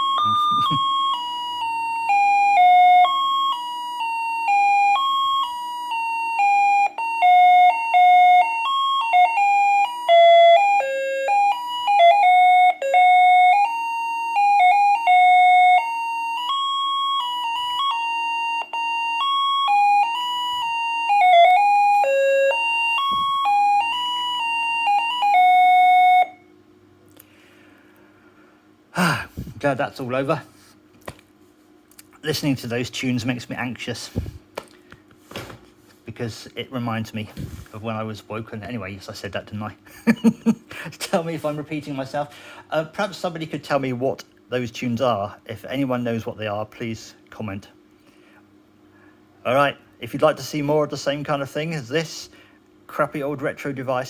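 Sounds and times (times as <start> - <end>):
electronic doorbell melody: 0.0 - 26.5.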